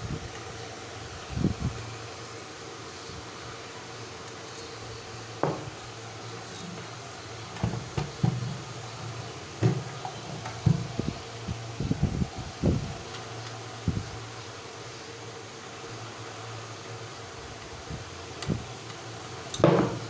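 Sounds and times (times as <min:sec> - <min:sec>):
fan-like hum: 0:00.0 - 0:20.0
hard objects knocking: 0:05.4 - 0:05.8, 0:07.5 - 0:11.2, 0:19.6 - 0:20.0.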